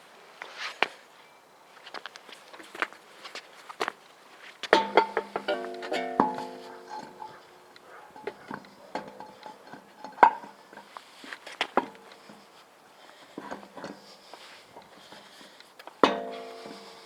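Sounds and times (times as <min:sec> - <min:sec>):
plucked string music: 0:04.8 - 0:08.4, 0:16.0 - 0:17.0
light clinks and knocks: 0:04.8 - 0:10.9, 0:16.0 - 0:17.0.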